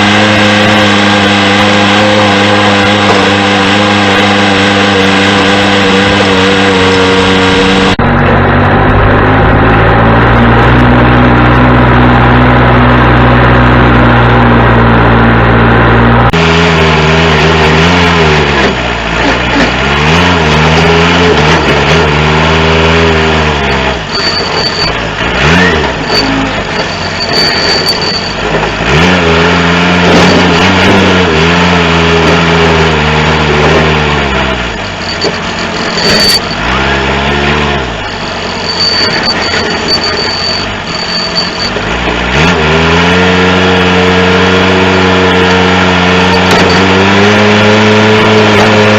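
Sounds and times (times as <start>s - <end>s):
diesel engine working: 0.0s - 48.9s
thin high tone: 24.0s - 28.4s, 34.7s - 37.2s, 37.9s - 41.8s
metal clanks: 24.0s - 28.8s, 34.7s - 36.8s, 38.0s - 42.2s.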